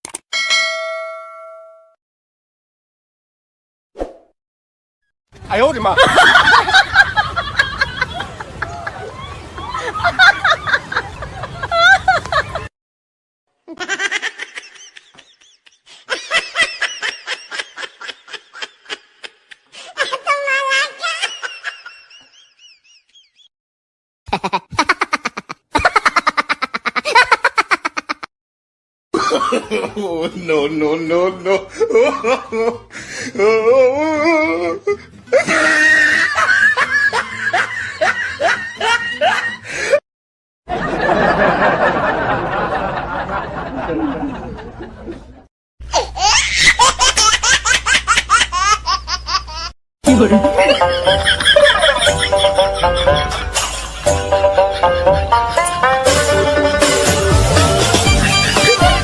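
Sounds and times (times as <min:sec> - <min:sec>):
high-pitched laughter: 0:13.7 - 0:23.3, 0:24.3 - 0:28.3, 0:31.8 - 0:32.8, 0:33.8 - 0:39.6, 0:45.9 - 0:57.0, 0:57.7 - 0:59.0.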